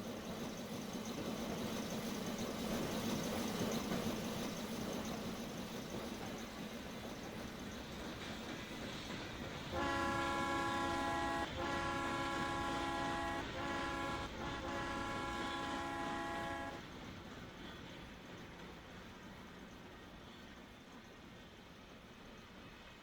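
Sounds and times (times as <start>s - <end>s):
steam locomotive whistle blasts: 9.7s - 16.9s.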